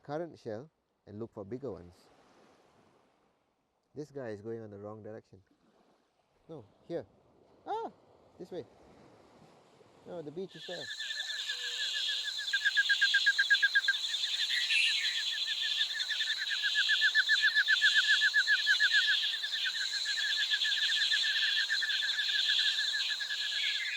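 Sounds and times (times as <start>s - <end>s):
steady high-pitched hiss: 9.4s - 23.9s
fast high chirping: 10.5s - 23.9s.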